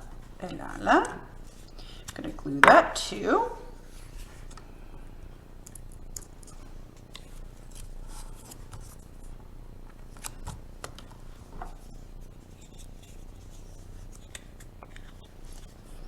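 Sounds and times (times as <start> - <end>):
soft paper rustles: 6.2 - 16.0.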